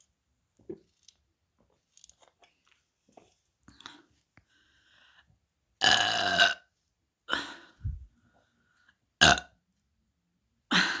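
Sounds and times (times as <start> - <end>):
person burping: 5.8 - 6.6, 9.2 - 9.5.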